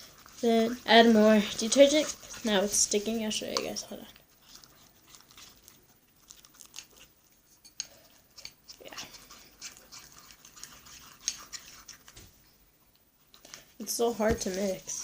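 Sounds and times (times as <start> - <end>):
sticky slime crackling and squelching: 0.0 - 7.2.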